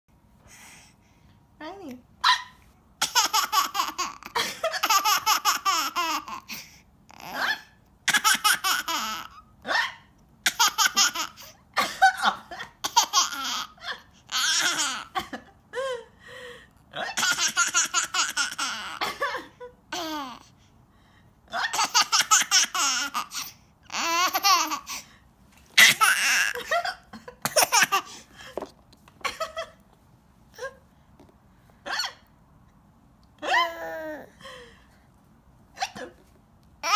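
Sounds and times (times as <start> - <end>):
baby laughing: 3.0 - 6.5, 7.2 - 9.4, 10.5 - 11.5, 12.8 - 15.2, 17.2 - 19.0, 21.7 - 25.0, 25.8 - 26.9.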